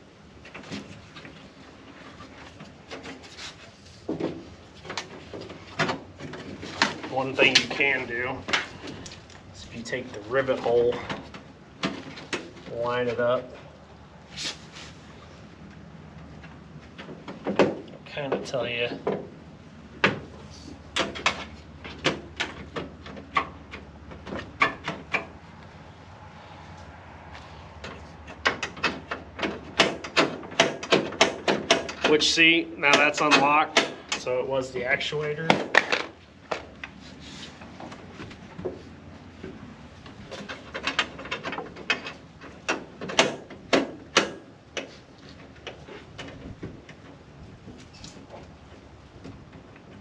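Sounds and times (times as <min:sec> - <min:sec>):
metallic clicks and knocks: 0:27.8 - 0:34.3, 0:39.4 - 0:47.2.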